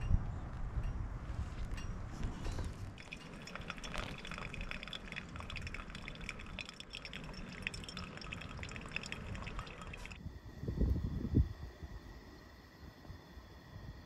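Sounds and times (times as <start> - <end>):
water trickling and splashing: 3.0 - 10.2.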